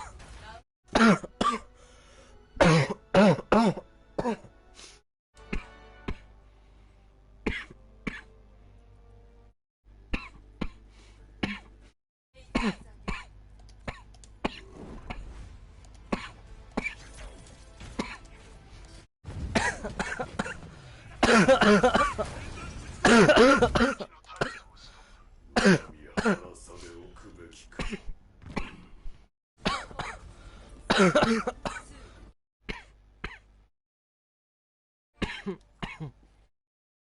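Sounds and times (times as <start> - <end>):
person coughing: 0.9 - 1.7, 2.6 - 4.5, 5.5 - 6.3, 7.4 - 8.3, 11.4 - 11.8, 12.5 - 13.3, 16.1 - 17.0, 18.0 - 18.4, 19.5 - 22.2, 23.0 - 24.8, 25.6 - 26.5, 27.8 - 29.0, 29.6 - 30.2, 30.9 - 33.5, 35.2 - 36.2.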